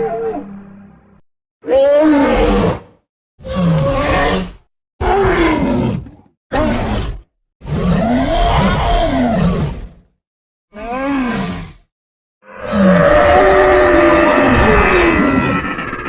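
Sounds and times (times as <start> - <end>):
cartoon dinosaur roaring calls: 0.0 - 0.8, 1.6 - 7.0, 7.7 - 9.7, 10.7 - 11.8, 12.4 - 16.0.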